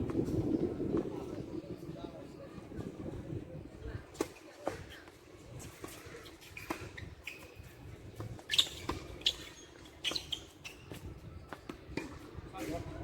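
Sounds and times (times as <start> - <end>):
shoes squeaking on court: 4.1 - 12.3.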